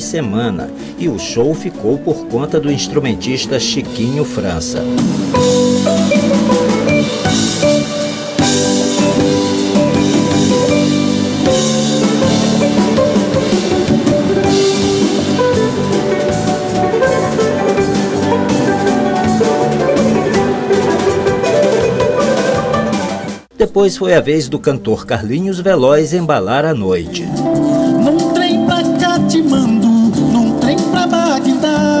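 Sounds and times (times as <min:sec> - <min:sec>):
live band instrumental music: 0:00.0 - 0:23.6, 0:27.0 - 0:32.0
drum kit with cymbals: 0:04.0 - 0:23.5.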